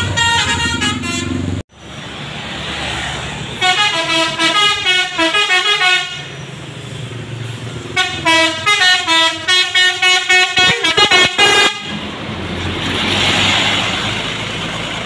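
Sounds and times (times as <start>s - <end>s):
musical bus horn tune: 0.0s - 1.6s, 3.6s - 6.4s, 7.9s - 12.0s
bus passing: 0.0s - 15.0s.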